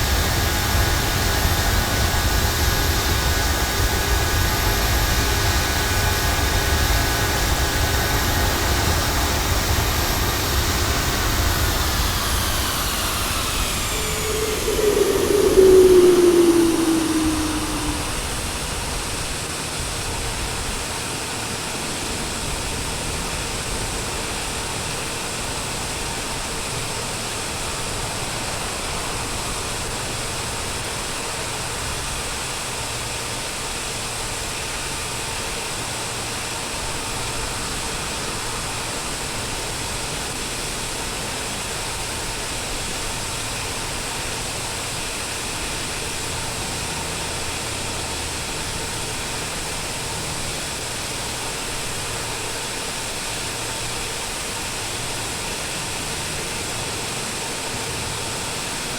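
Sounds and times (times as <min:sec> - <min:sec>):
faint hum: 0:00.0 - 0:19.4
jet engine and airflow rush: 0:00.0 - 0:19.5.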